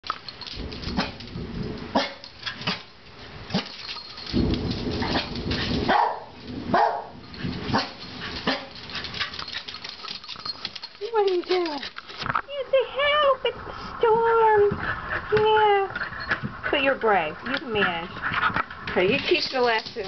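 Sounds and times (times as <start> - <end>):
low thunder rumbling: 0.5 - 2.0, 4.3 - 8.9
small dogs barking: 5.9 - 8.8.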